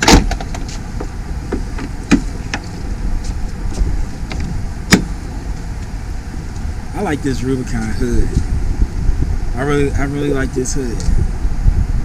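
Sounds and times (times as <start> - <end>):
low outdoor rumble: 0.0 - 12.0.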